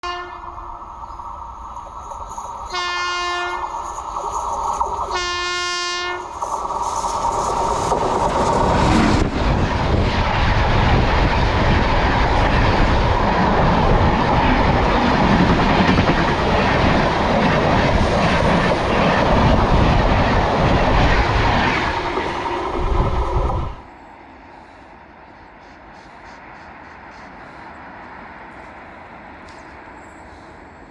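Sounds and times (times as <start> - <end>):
train horn blasts: 0.0 - 0.6, 2.7 - 3.7, 5.1 - 6.3
train wheels and carriages passing: 0.0 - 30.9.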